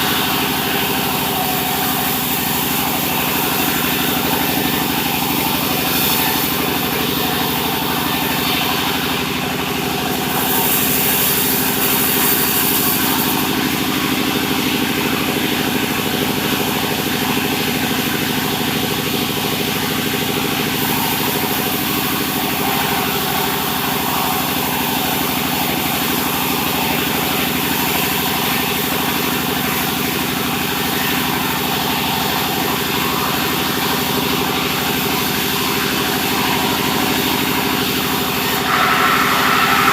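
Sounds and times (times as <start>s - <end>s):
sawmill engine drone: 0.0s - 39.9s
high hiss: 38.7s - 39.9s.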